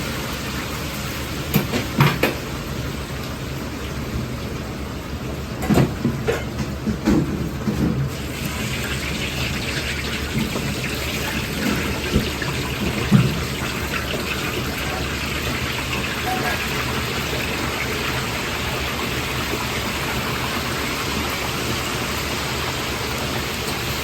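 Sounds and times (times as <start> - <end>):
kitchen knocks and clatters: 1.5 - 2.5, 5.6 - 8.1, 10.3 - 15.0.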